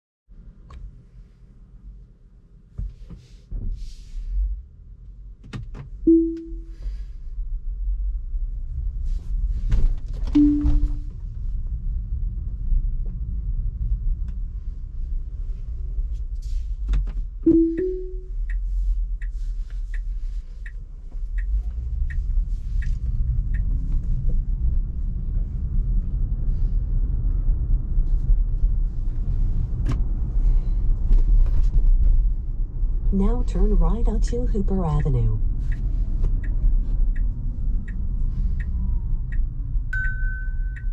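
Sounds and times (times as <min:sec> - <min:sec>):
road and tyre rumble: 0:00.3 - 0:40.9
turn signal clicks: 0:05.4 - 0:06.8, 0:17.0 - 0:24.4, 0:33.4 - 0:40.9
two-note chime: 0:06.1 - 0:06.8, 0:10.4 - 0:11.1, 0:17.5 - 0:18.3.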